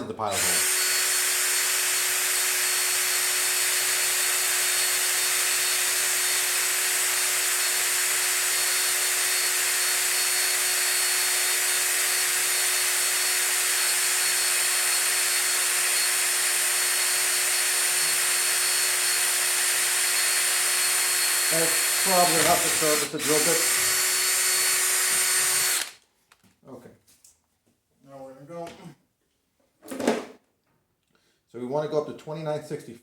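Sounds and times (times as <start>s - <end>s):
electric drill whining: 0.3s - 26.0s.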